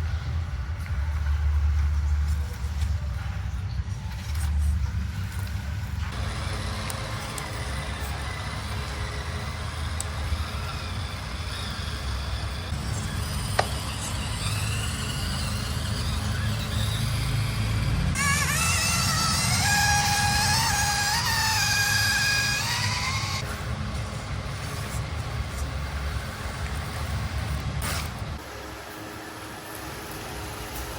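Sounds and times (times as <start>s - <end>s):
low vehicle engine rumble: 0.0s - 28.4s.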